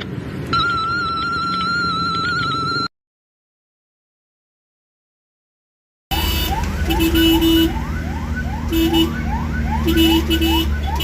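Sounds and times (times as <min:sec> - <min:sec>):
siren yelping: 0:00.5 - 0:02.9, 0:06.1 - 0:11.0.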